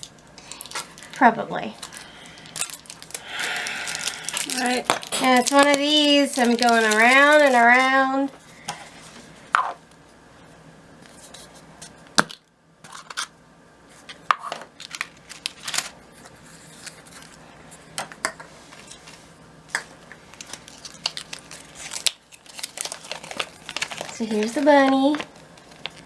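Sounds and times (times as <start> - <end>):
plastic packaging crinkling: 0.0 - 9.2, 14.7 - 17.4, 20.1 - 26.0.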